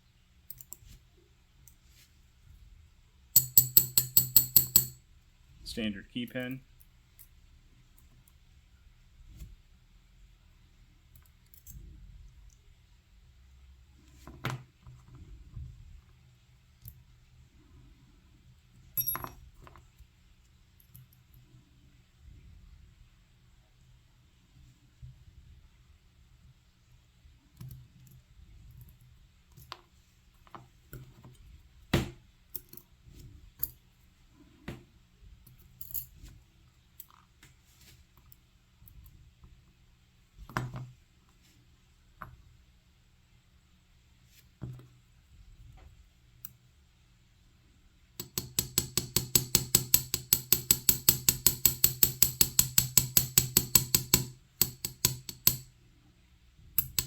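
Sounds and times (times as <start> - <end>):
small clicks of lock parts: 0.5 - 0.8, 48.2 - 55.7, 56.8 - 57.0.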